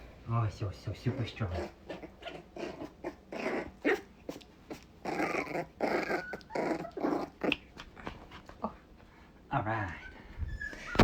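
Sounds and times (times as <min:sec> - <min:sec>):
puppies growling in play: 0:01.0 - 0:08.9.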